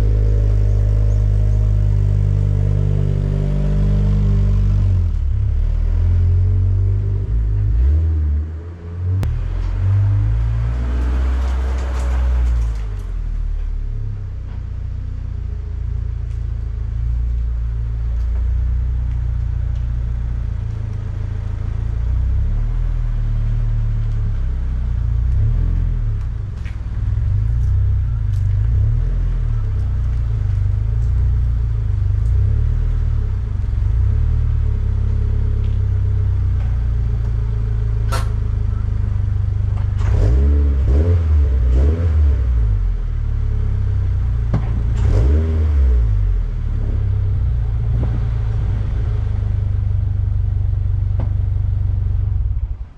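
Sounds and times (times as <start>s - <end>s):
car engine idling and revving: 0.0s - 52.9s
sharp click: 38.1s - 38.4s.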